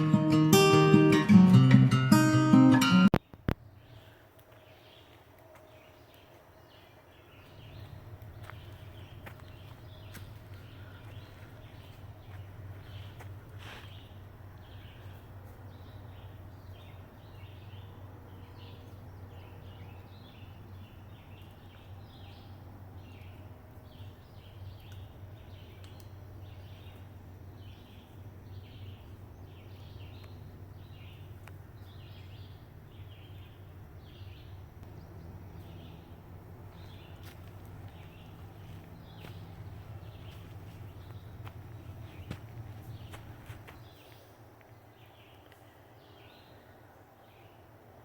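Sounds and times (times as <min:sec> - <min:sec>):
steady low rumble: 0:07.4 - 0:43.9.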